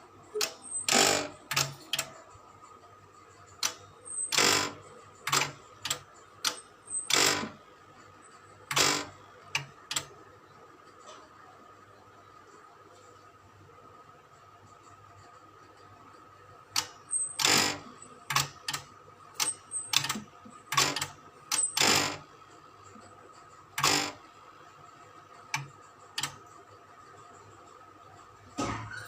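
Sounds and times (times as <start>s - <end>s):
mechanical clicks and clacks: 0.3s - 2.3s, 3.6s - 7.6s, 8.3s - 10.2s, 16.7s - 22.3s, 22.9s - 24.2s, 25.4s - 26.7s.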